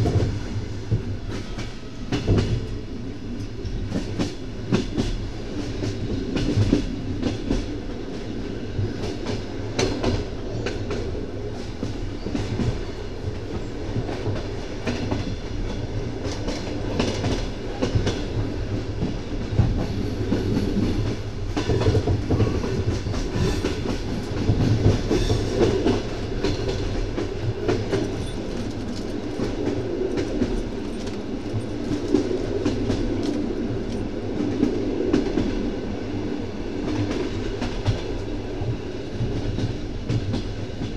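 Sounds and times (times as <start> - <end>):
train running rumble: 0.0 - 40.9
train wheels clattering: 8.8 - 35.6.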